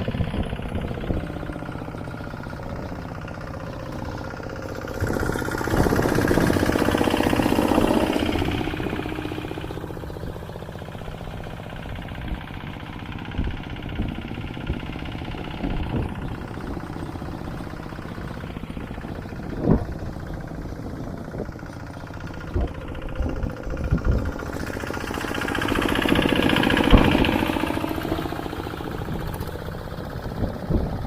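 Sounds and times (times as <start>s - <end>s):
tractor engine running: 0.0s - 31.0s.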